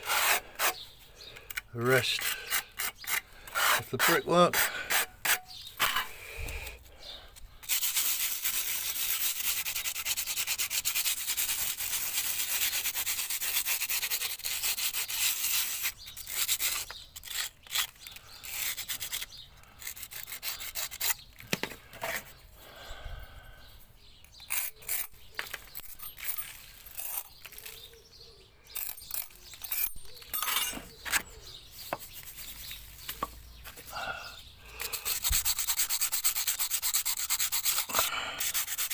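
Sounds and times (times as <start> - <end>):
hand scraping over brick: 0.0 - 22.4, 24.4 - 27.9.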